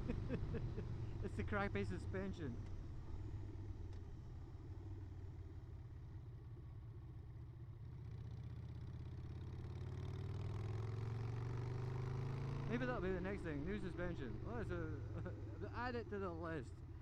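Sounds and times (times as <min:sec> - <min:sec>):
motorcycle engine revving: 0:08.1 - 0:15.5.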